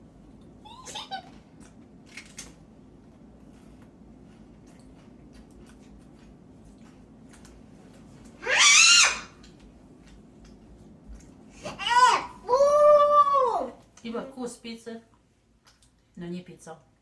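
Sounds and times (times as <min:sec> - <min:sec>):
girl shrieking: 0:08.4 - 0:09.4, 0:11.8 - 0:13.7.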